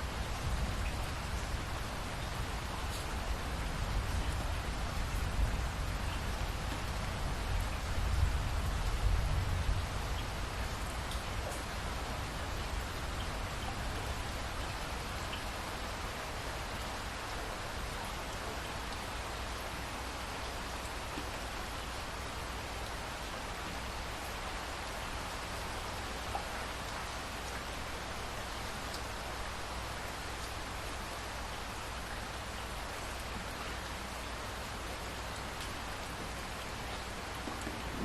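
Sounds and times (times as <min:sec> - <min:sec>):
steady rain falling: 0:00.0 - 0:38.0
low rumble of thunder: 0:37.4 - 0:38.0.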